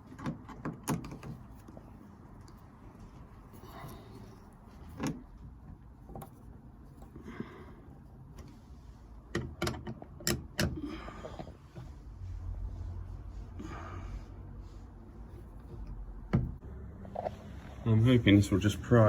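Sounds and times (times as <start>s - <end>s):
tools clicking and knocking: 0.0s - 1.8s, 9.3s - 10.8s.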